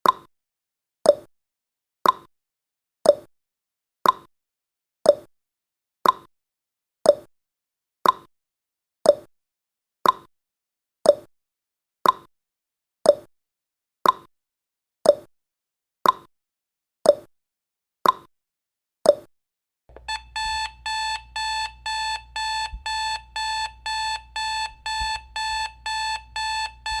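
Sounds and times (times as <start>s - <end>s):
timer ticking: 19.9s - 27.0s
rapid electronic alarm beeping: 20.0s - 27.0s.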